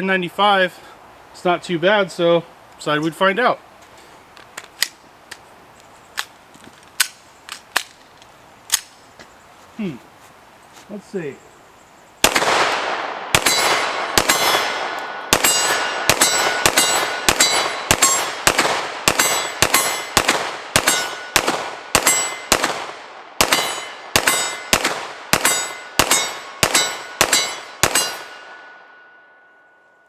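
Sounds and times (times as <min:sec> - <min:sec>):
pistol gunshots with ringing tail: 0:12.2 - 0:29.0.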